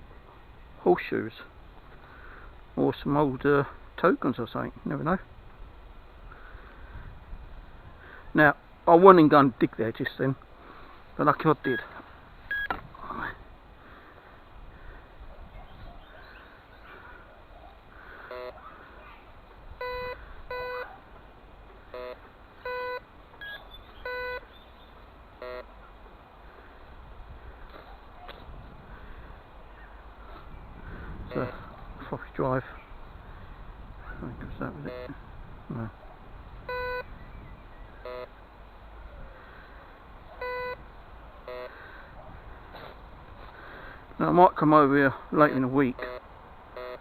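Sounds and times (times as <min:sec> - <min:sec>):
metal detector beeps: 0:12.5 - 0:12.8, 0:19.8 - 0:20.9, 0:22.0 - 0:24.4, 0:25.4 - 0:25.7, 0:36.7 - 0:37.1, 0:38.0 - 0:38.3, 0:40.4 - 0:40.8, 0:41.5 - 0:41.7, 0:46.0 - 0:46.2, 0:46.8 - 0:47.0.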